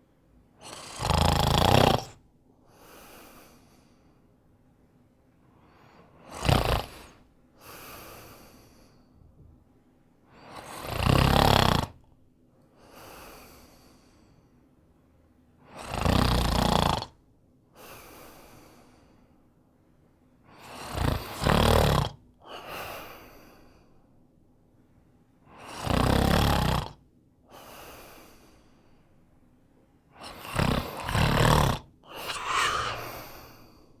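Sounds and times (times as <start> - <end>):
loud snoring: 0.6 - 2.2, 6.2 - 7.2, 10.5 - 12.0, 15.8 - 17.2, 20.6 - 22.2, 25.6 - 27.0, 30.2 - 33.8
soft breath: 2.6 - 4.5, 7.0 - 9.4, 12.7 - 14.8, 17.8 - 19.5, 22.5 - 24.2, 27.5 - 29.5, 30.2 - 34.0.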